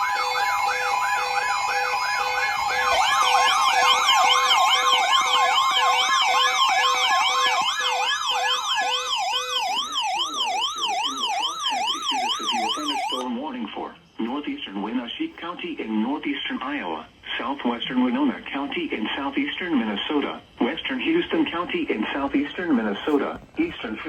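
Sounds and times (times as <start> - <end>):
higher sweeping siren: 0.0 - 13.3
electronic sirens yelping: 0.0 - 13.4.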